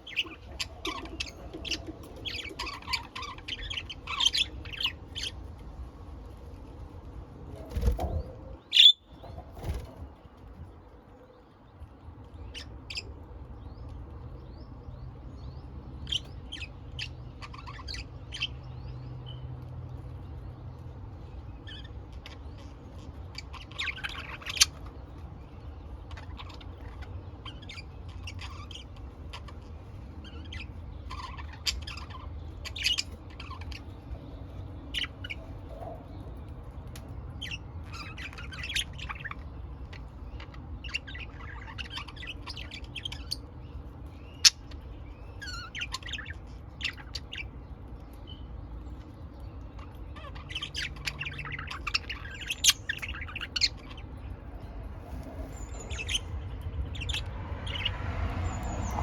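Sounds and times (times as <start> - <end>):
budgerigars chirping: 0.0 - 5.4, 8.6 - 9.9, 16.0 - 18.7, 21.6 - 25.0, 26.0 - 36.5, 37.3 - 59.0
low steady hum: 0.0 - 59.0.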